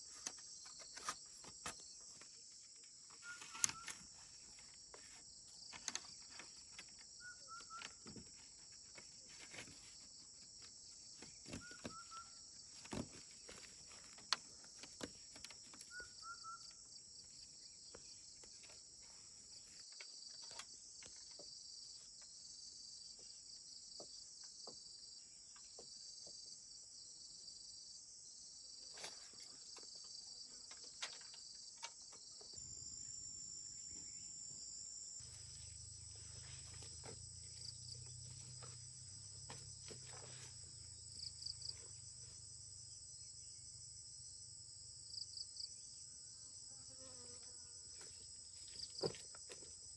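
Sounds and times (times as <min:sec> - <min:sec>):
small clicks and knocks: 0:30.6 - 0:32.6
insects chorus pulsing: 0:32.6 - 0:45.9.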